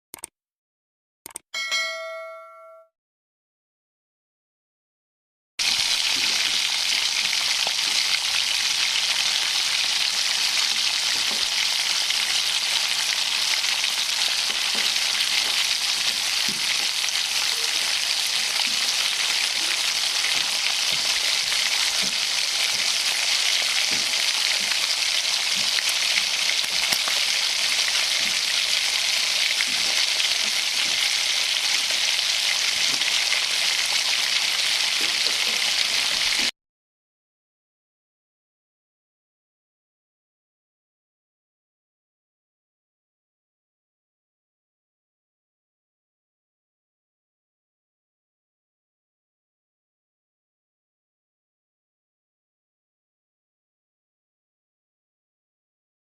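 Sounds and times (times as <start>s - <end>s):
bacon sizzling: 5.6s - 36.5s.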